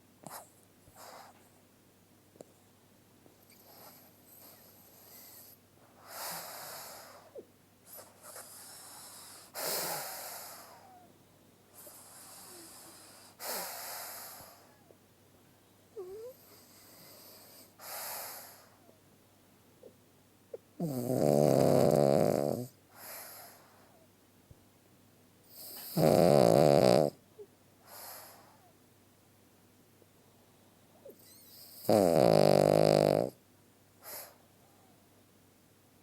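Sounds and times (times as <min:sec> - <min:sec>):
dog wheezing breaths: 0:00.2 - 0:01.5, 0:03.5 - 0:11.0, 0:11.7 - 0:14.8, 0:16.1 - 0:18.8, 0:22.9 - 0:23.9, 0:27.8 - 0:28.7, 0:34.0 - 0:34.4.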